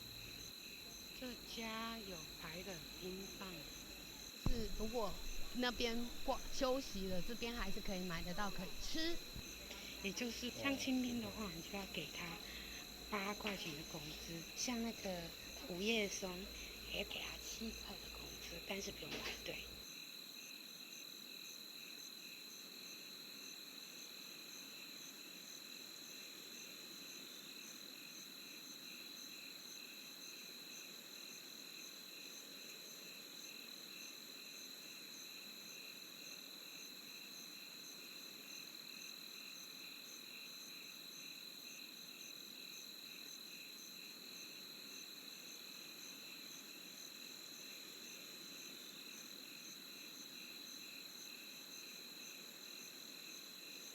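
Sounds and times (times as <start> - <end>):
crickets chirping: 0.0 - 53.9
insects high trill: 1.1 - 19.8.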